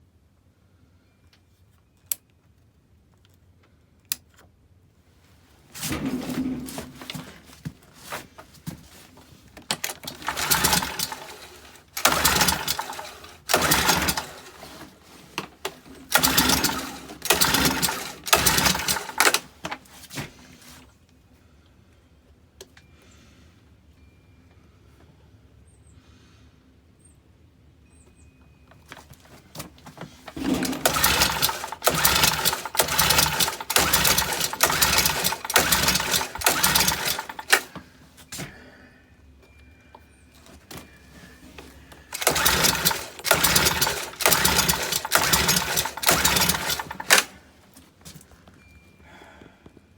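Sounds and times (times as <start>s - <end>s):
leaf blower engine cranking: 5.8s - 8.4s, 9.1s - 20.6s, 29.6s - 38.5s, 41.6s - 47.5s.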